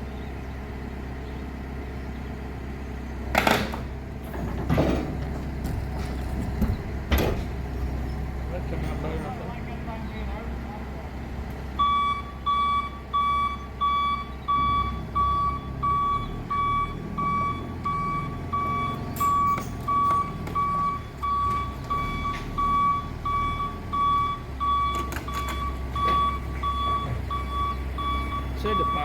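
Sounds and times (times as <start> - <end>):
engine running low: 0.0 - 29.0
forklift reversing alarm beeping: 11.8 - 29.0.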